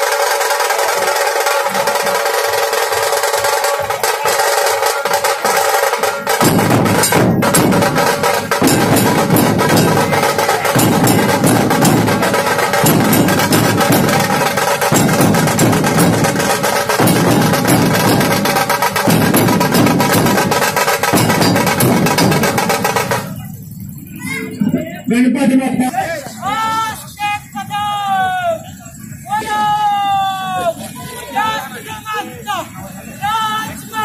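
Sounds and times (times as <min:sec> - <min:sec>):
fast drumming: 0:00.0 - 0:25.0
deep drum beats: 0:00.0 - 0:25.9.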